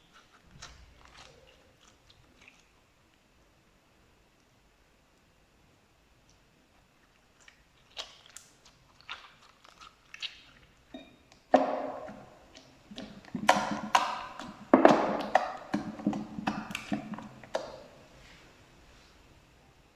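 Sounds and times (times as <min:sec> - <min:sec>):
slime squishing and popping: 0:11.2 - 0:17.8.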